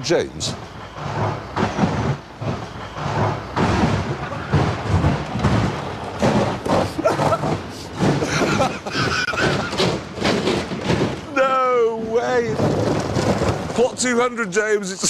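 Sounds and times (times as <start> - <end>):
man laughing wheezily: 6.8 - 9.8.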